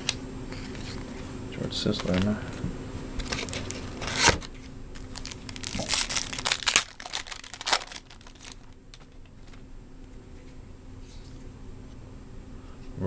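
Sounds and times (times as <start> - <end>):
wrapper crinkling and cards rustling: 1.8 - 2.4, 3.2 - 9.6.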